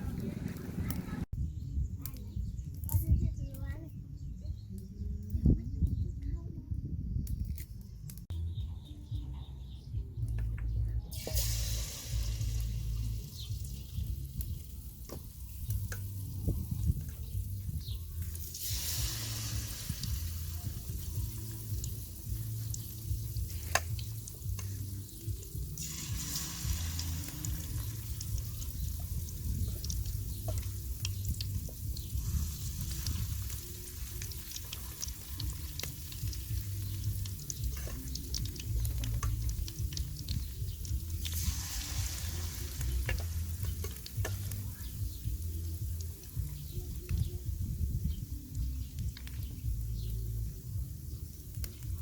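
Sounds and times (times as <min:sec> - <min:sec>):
chicken sizzling in hot oil: 0:11.1 - 0:52.0.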